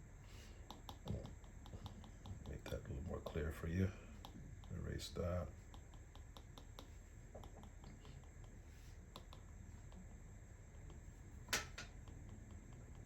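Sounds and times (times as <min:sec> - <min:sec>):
light clicks and taps: 0:00.6 - 0:10.1.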